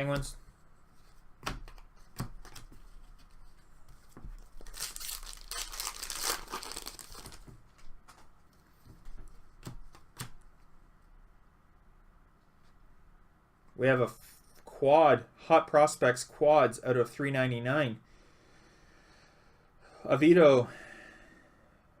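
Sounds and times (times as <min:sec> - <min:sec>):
cards clicking and tapping: 0:01.4 - 0:02.8, 0:09.1 - 0:10.4
foil wrapper tearing and crinkling: 0:04.6 - 0:07.5.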